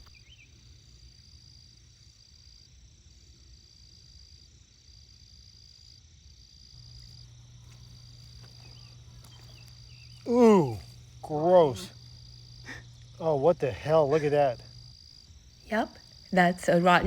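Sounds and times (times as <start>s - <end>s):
insects trilling: 0.0s - 17.0s
low steady hum: 6.8s - 17.0s.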